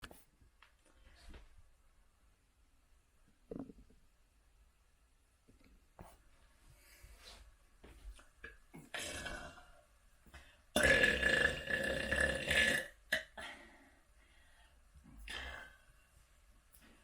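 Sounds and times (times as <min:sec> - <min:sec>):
person burping: 0:08.4 - 0:09.8, 0:10.8 - 0:13.5, 0:15.2 - 0:15.8.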